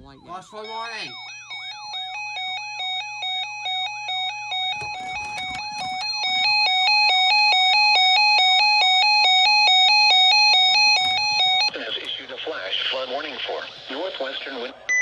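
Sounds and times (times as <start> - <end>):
two-pitch electronic alert tone: 0.0 - 2.5.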